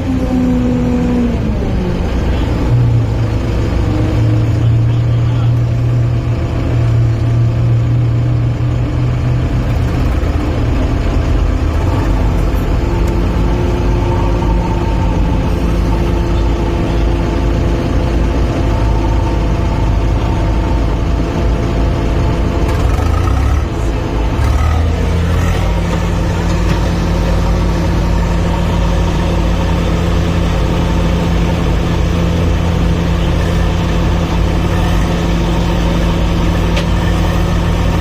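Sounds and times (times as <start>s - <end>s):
heavy diesel engine under load: 0.0s - 38.0s.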